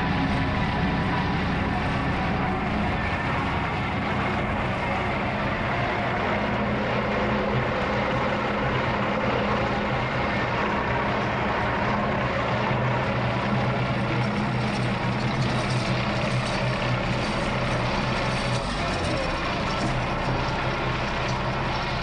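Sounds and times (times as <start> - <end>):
diesel engine idling: 0.0 - 22.0.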